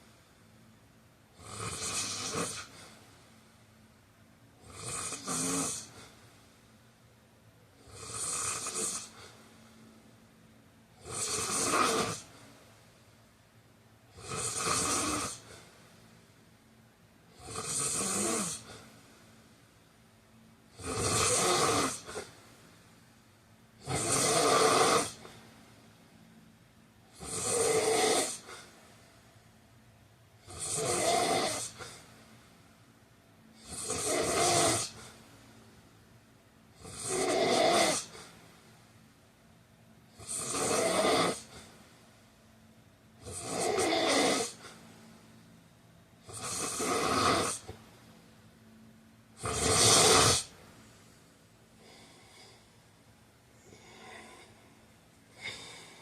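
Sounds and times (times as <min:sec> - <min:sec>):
soft faint breaths: 0:00.0 - 0:08.0, 0:08.6 - 0:17.6, 0:18.4 - 0:20.8, 0:25.1 - 0:33.8, 0:34.4 - 0:37.3, 0:38.0 - 0:56.0
man snoring: 0:01.4 - 0:02.8, 0:04.6 - 0:06.0, 0:07.8 - 0:09.3, 0:11.0 - 0:12.3, 0:14.1 - 0:15.5, 0:17.3 - 0:18.8, 0:20.7 - 0:22.3, 0:23.8 - 0:25.3, 0:27.1 - 0:28.7, 0:30.4 - 0:32.0, 0:33.6 - 0:35.1, 0:36.8 - 0:38.2, 0:40.2 - 0:41.6, 0:43.2 - 0:44.7, 0:46.2 - 0:47.8, 0:49.4 - 0:50.5, 0:53.6 - 0:54.6, 0:55.3 - 0:56.0.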